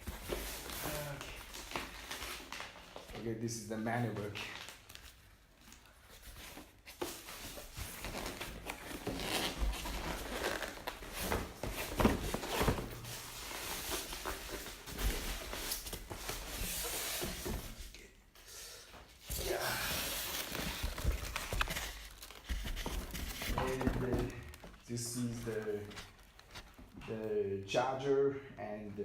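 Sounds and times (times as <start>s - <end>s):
packaging rustling: 0.0s - 3.2s, 4.3s - 17.8s, 19.3s - 27.0s.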